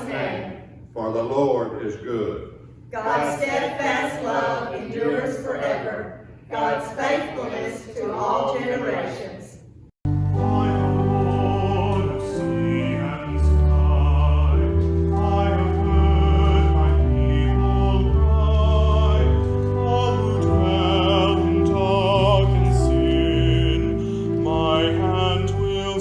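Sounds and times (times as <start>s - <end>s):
sustained accompaniment chords: 10.1s - 26.0s.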